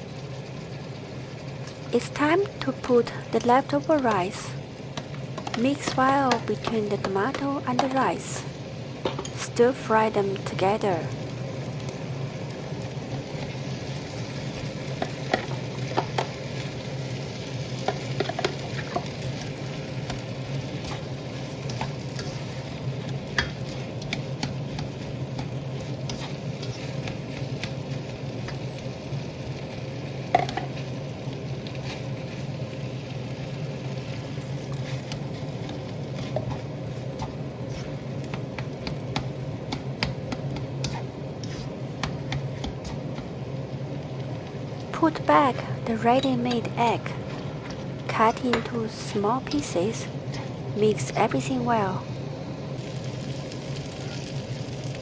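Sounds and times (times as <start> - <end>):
food sizzling in a hot pan: 0.0 - 44.9, 52.0 - 55.0
spatula stirring and scraping: 17.8 - 28.6, 31.6 - 32.7, 34.5 - 43.4.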